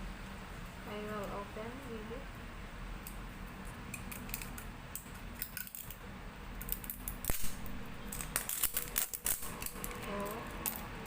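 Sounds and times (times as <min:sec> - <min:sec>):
plastic package clicking and rattling: 0:06.6 - 0:11.0.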